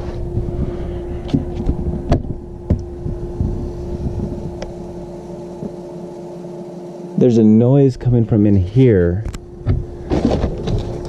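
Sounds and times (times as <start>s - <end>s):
low rumble: 0.0s - 6.3s, 7.4s - 11.0s
steady mechanical hum: 0.0s - 11.0s
dull knocks and thumps: 0.4s - 4.6s, 9.6s - 11.0s.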